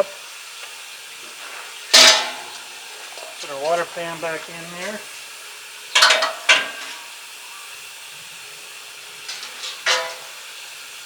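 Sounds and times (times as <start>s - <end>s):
steady background hiss: 0.0s - 11.0s
ringing metal clank: 2.0s - 2.6s, 6.0s - 7.0s, 9.3s - 10.4s.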